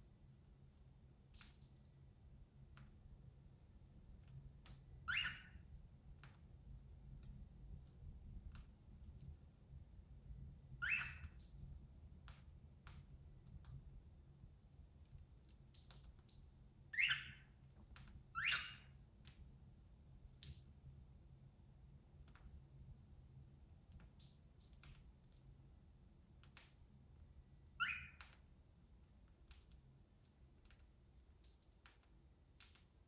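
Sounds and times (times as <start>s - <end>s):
bird high chirps: 5.0s - 5.6s, 10.8s - 11.4s, 16.9s - 17.6s, 18.3s - 19.0s, 27.8s - 28.4s.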